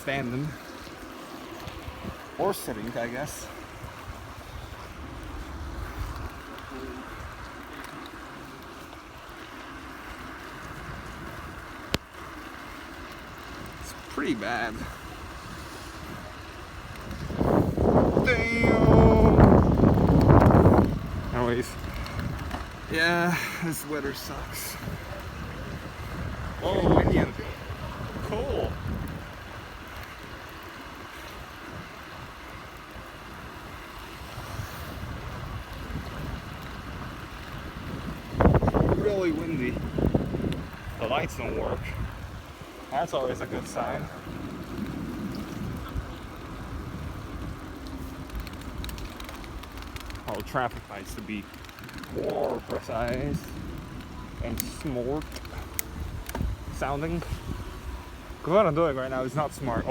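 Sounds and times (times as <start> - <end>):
tyres on wet ground: 0.0 - 59.9
wind on microphone: 13.6 - 30.4, 31.0 - 59.9.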